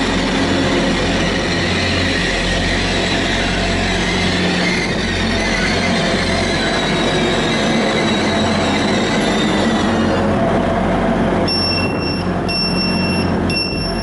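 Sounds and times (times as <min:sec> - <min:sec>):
train rumbling: 0:00.0 - 0:14.0
electronic beeps: 0:11.5 - 0:14.0.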